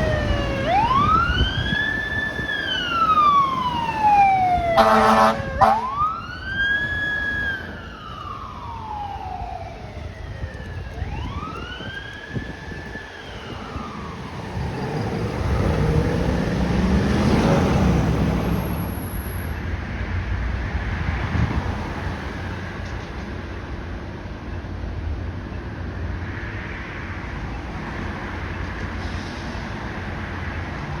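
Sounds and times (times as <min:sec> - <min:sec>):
fire truck siren wailing: 0:00.0 - 0:19.7
truck passing rumble: 0:00.0 - 0:24.2.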